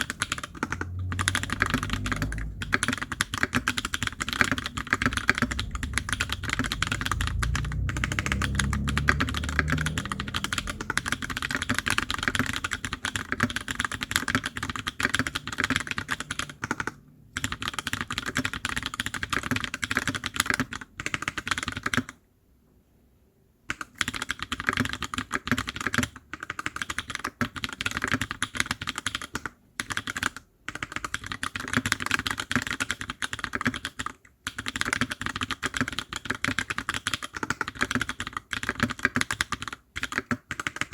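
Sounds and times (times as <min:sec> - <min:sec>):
fast typing on mechanical keyboard: 0:00.0 - 0:22.2, 0:23.7 - 0:40.9
low rumble: 0:00.4 - 0:12.3.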